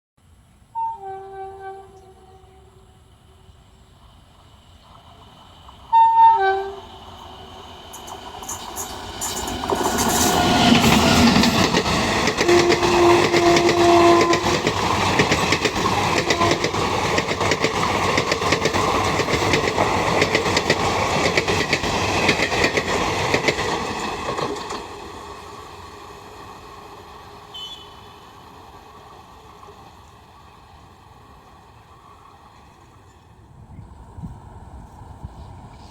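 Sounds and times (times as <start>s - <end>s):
train horn: 0.7s - 3.1s, 5.9s - 7.5s, 12.2s - 14.8s, 16.0s - 17.0s, 27.4s - 28.4s
train wheels clattering on rails: 7.6s - 27.3s.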